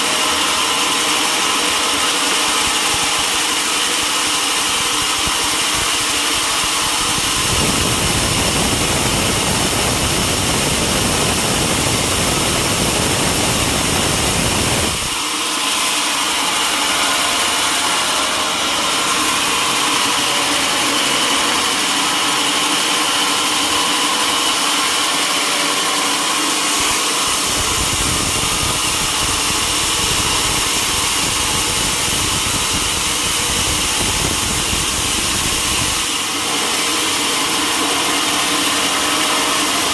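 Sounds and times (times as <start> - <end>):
high machine whine: 0.0 - 39.9
sawmill machinery running: 0.0 - 39.9
low machine rumble: 6.4 - 15.2.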